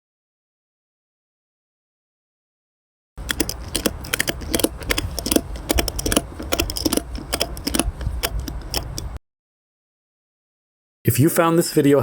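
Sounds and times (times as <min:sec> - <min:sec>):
ratchet strap metal clicks: 0:03.2 - 0:09.2.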